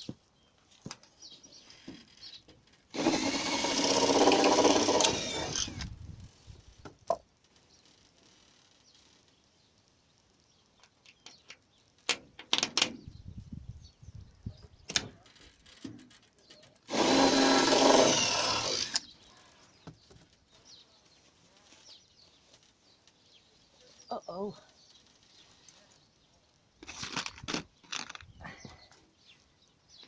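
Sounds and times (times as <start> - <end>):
power drill driving screw into wood: 2.9 - 6.0, 16.9 - 19.1.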